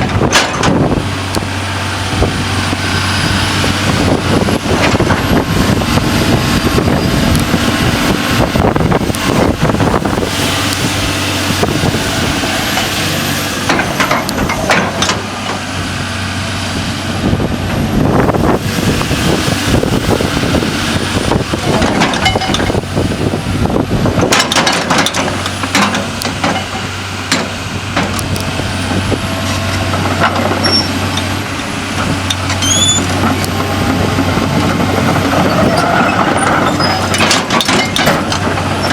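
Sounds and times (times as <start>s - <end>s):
metal clanks and knocks: 0.0s - 0.9s, 13.6s - 15.6s, 21.7s - 22.8s, 24.2s - 28.3s, 29.5s - 31.3s, 34.6s - 38.9s
diesel engine humming: 0.0s - 38.9s
hydraulic noise: 0.0s - 38.9s.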